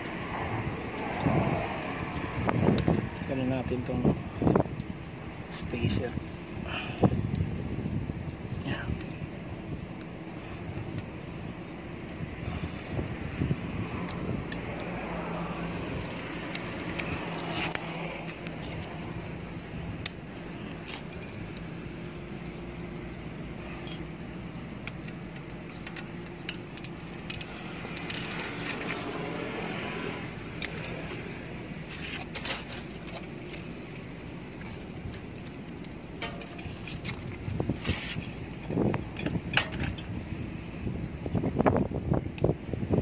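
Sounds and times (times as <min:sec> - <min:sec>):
low background hum: 0:04.2 - 0:28.7
small metal parts clinking: 0:23.6 - 0:24.2, 0:30.5 - 0:31.2.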